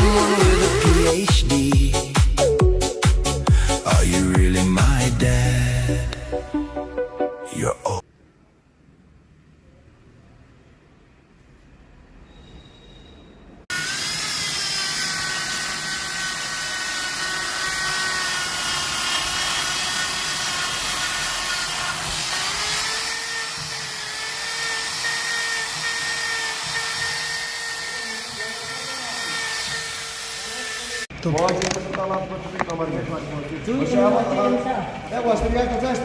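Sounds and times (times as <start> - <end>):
small motor whining: 13.7 - 31.1.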